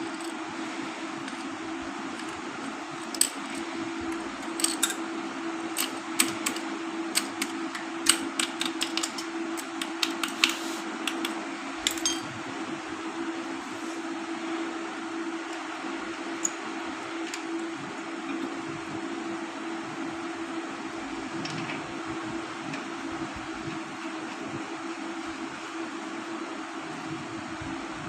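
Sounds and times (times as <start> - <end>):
steady hum: 0.0 - 28.0
metal tools and parts clinking: 11.8 - 12.3.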